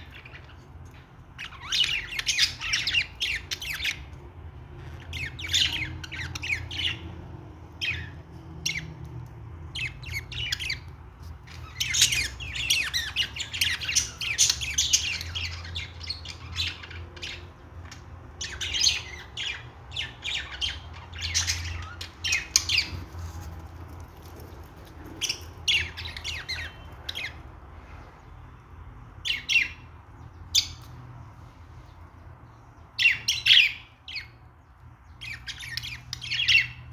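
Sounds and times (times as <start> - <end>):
budgerigars chattering: 9.8 - 23.1.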